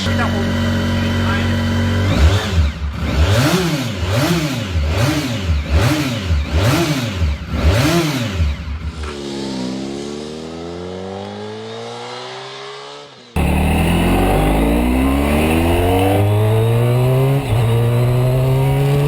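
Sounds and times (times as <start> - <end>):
motorcycle engine revving: 0.0 - 19.0.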